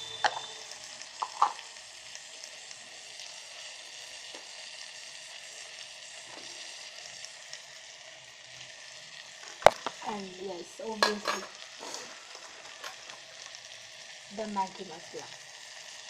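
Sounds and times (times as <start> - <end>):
masala sizzling: 0.0 - 16.0
stirring clinks: 11.0 - 13.2.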